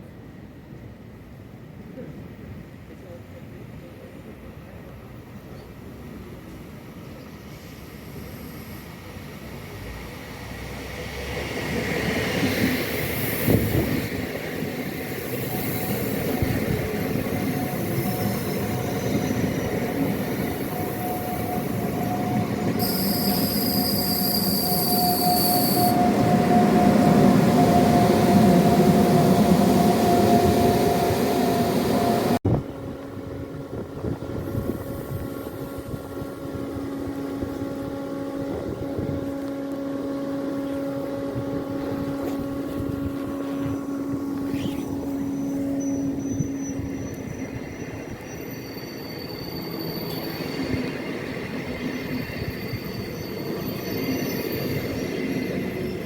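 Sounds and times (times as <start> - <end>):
train running on rails: 0.0 - 56.0
high wheel squeal: 15.3 - 32.4, 44.4 - 56.0.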